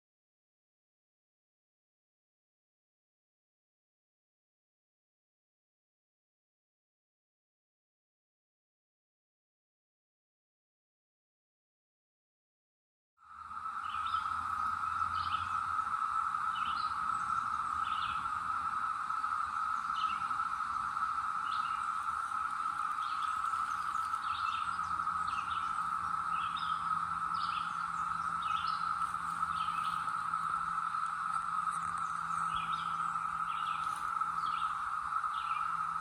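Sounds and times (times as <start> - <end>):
cicadas droning: 13.2 - 36.0.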